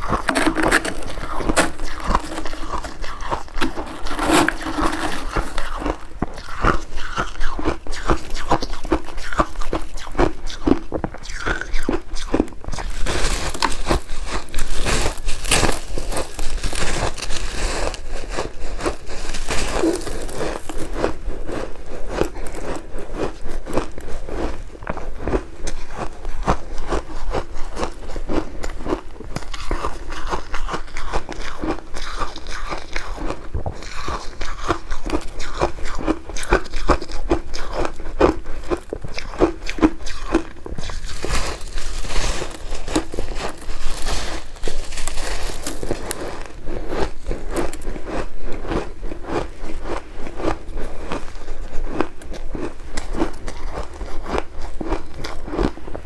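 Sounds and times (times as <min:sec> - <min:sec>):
ice crunching while chewed: 0:00.0 - 0:56.0.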